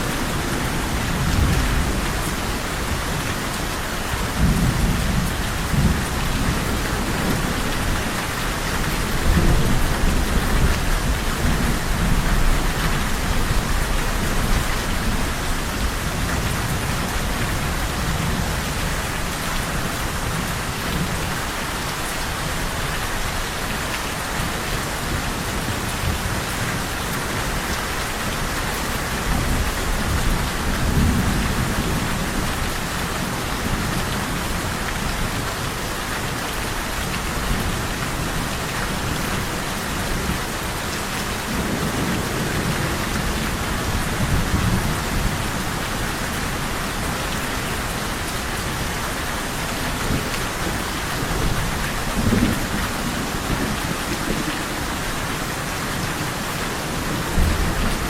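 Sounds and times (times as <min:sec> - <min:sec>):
thunder rolling: 0:00.0 - 0:18.6, 0:49.5 - 0:55.2
steady rain pouring: 0:00.0 - 0:58.0.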